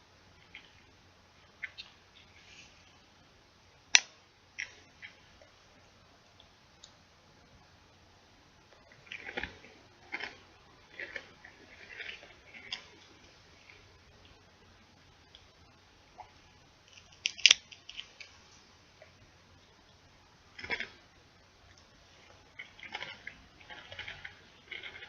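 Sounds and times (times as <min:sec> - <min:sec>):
chip bag crinkling: 0:08.8 - 0:13.9, 0:22.3 - 0:25.0
chips crunching: 0:08.8 - 0:14.4, 0:16.9 - 0:18.4, 0:20.5 - 0:21.0, 0:21.7 - 0:25.0.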